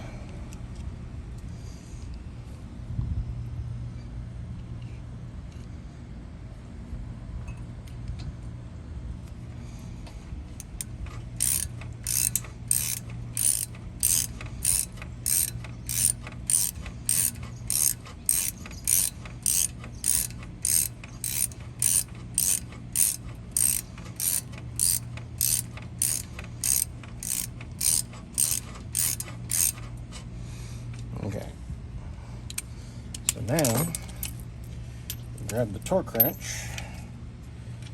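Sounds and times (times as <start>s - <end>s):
socket ratchet clicking: 10.6s - 29.9s.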